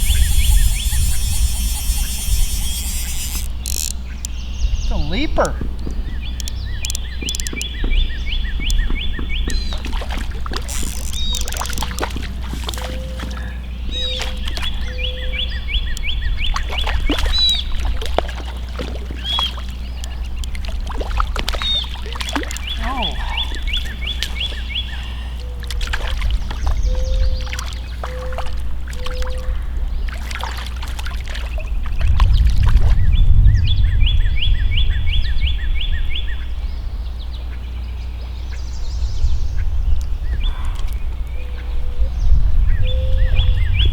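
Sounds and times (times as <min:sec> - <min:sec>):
trilling animal call: 0:00.0 - 0:04.0
sharp clicks: 0:00.0 - 0:04.4, 0:06.2 - 0:08.0, 0:08.6 - 0:13.4, 0:15.8 - 0:26.8.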